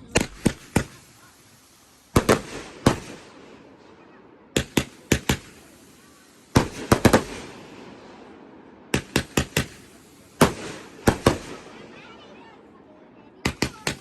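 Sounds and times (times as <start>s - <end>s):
fireworks exploding: 0.0s - 14.0s
fireworks rumble: 0.0s - 14.0s.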